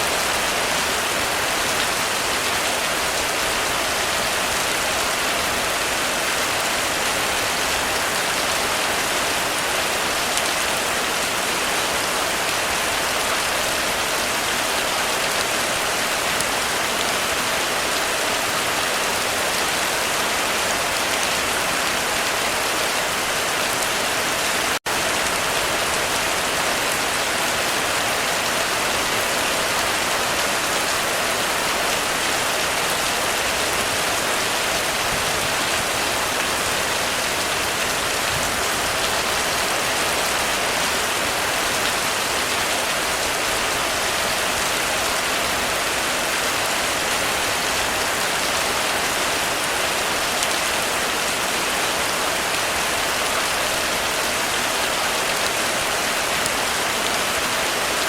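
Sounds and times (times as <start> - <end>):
heavy rain on a roof: 0.0 - 58.0.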